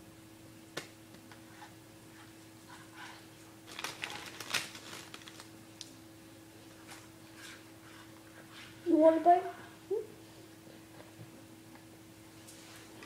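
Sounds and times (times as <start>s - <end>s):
steady low hum: 0.0s - 13.0s
eating crackles and clicks: 3.7s - 6.0s.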